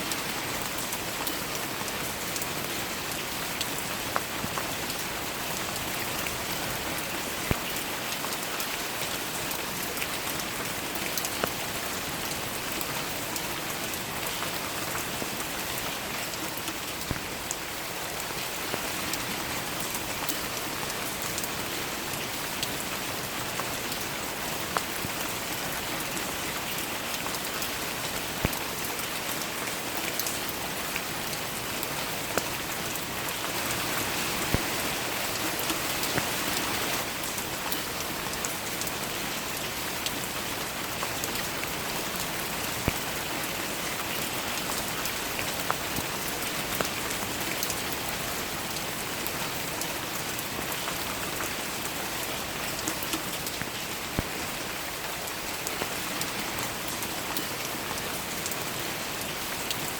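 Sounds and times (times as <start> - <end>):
rain hissing: 30.6 - 47.4.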